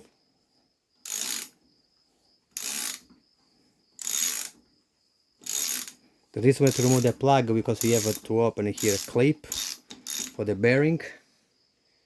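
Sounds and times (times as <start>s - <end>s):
ratchet clicking: 1.0s - 1.6s, 2.5s - 3.1s, 4.0s - 4.6s, 5.4s - 6.0s, 6.6s - 7.2s, 7.8s - 10.4s.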